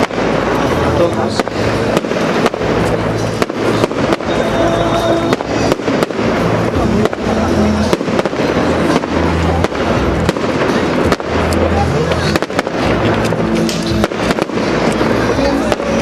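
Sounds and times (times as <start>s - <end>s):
fireworks bangs and crackles: 0.0s - 16.0s
music playing: 0.0s - 16.0s.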